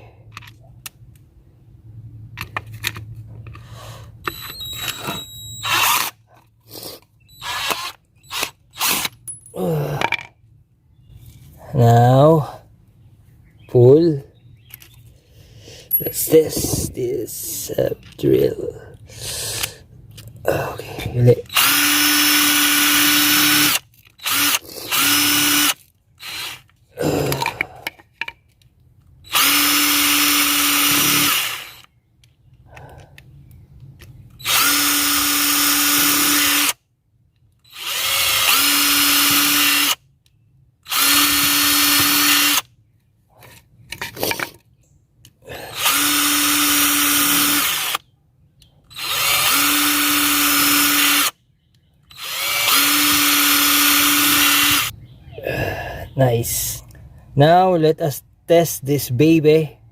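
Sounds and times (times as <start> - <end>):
impact driver motor whining: 4.2 - 6.2, 7.2 - 9.1, 21.0 - 27.6, 29.3 - 31.9, 34.4 - 36.8, 37.7 - 40.0, 40.9 - 42.7, 45.6 - 48.1, 48.9 - 51.4, 52.1 - 54.9.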